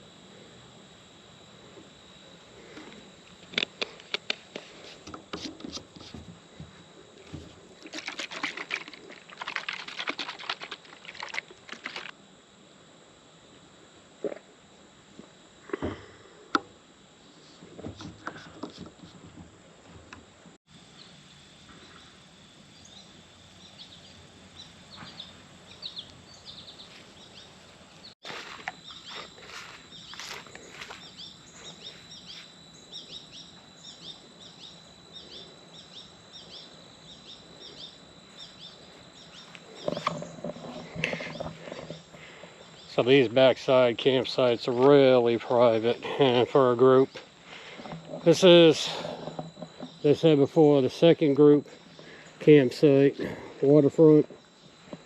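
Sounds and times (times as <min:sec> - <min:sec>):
high-pitched insect drone: 0:00.0 - 0:19.0, 0:20.7 - 0:55.0
birds chirping: 0:21.8 - 0:28.2, 0:28.8 - 0:43.2.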